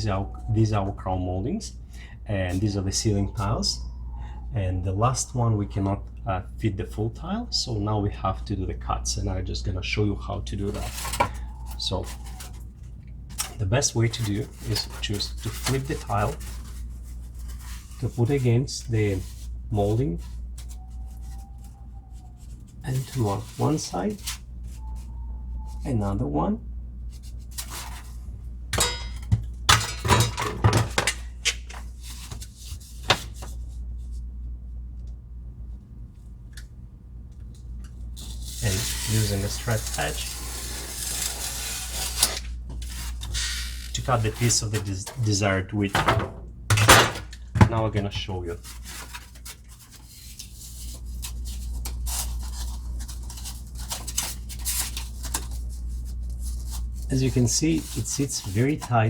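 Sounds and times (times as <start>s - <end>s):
steady low hum: 0.0s - 59.0s
knife cutting polystyrene: 10.6s - 12.7s, 13.4s - 21.7s, 22.4s - 24.5s, 38.2s - 45.4s, 48.5s - 59.0s.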